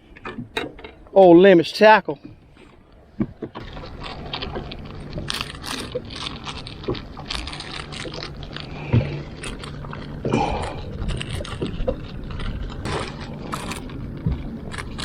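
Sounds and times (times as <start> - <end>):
steady low hum: 2.0 - 15.0
fishing tackle clicking and rattling: 3.6 - 15.0.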